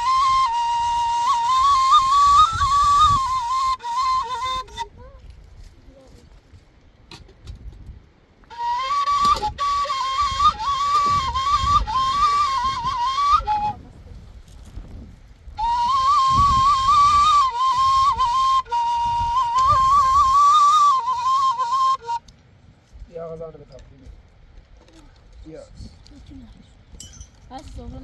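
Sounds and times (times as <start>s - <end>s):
flute playing slow melody: 0.0s - 5.1s, 8.4s - 13.9s, 15.6s - 22.3s.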